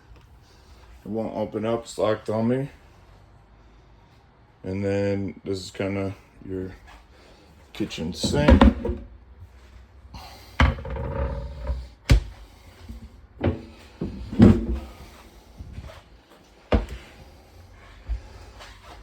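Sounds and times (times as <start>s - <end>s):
cabinet doors knocking shut: 8.2s - 9.0s.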